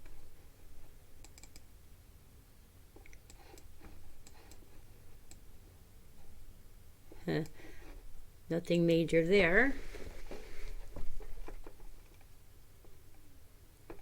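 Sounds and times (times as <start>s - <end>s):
faint low hum: 0.0s - 14.0s
computer mouse clicks: 1.2s - 1.7s, 3.0s - 5.5s.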